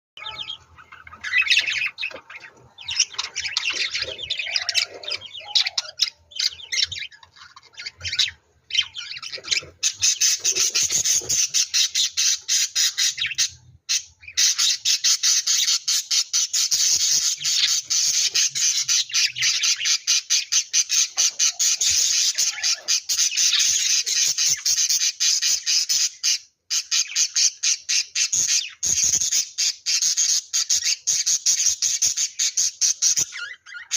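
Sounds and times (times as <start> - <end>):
bird squawking: 0.2 - 33.9.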